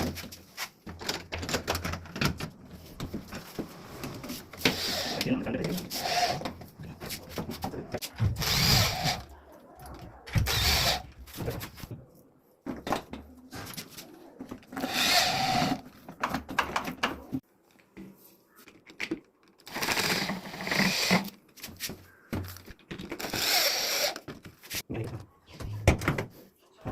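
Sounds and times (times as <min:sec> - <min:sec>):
power drill running: 0:08.4 - 0:09.2, 0:10.4 - 0:11.0, 0:14.8 - 0:15.8, 0:19.7 - 0:21.2, 0:23.2 - 0:24.2.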